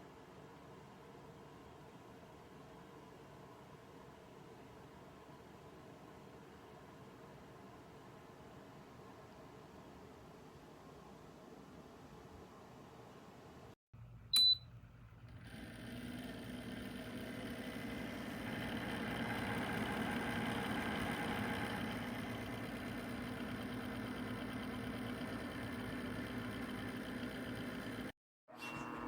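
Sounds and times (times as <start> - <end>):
heater fan whirring: 14.0 - 28.2
short electronic beep: 14.3 - 14.7.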